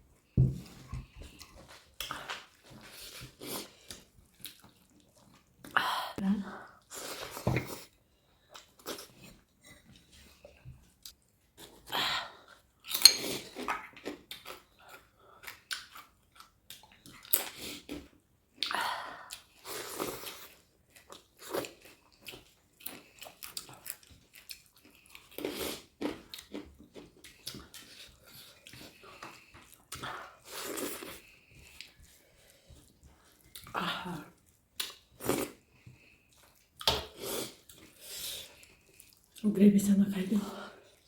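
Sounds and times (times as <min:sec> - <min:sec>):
chewing and crunching: 0:01.0 - 0:05.8, 0:12.4 - 0:39.4.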